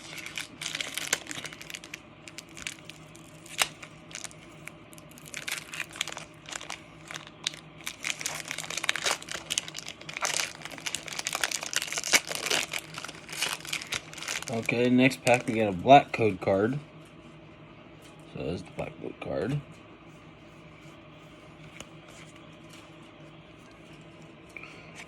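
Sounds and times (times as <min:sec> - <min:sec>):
foil wrapper crinkling: 0:00.0 - 0:15.7.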